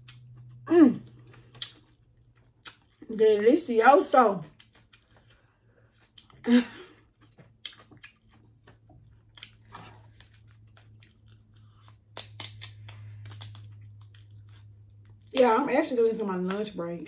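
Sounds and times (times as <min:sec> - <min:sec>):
chewing and wet mouth sounds: 0:00.0 - 0:03.7, 0:04.4 - 0:15.6
sharp mouth clicks and smacks: 0:01.3 - 0:02.9.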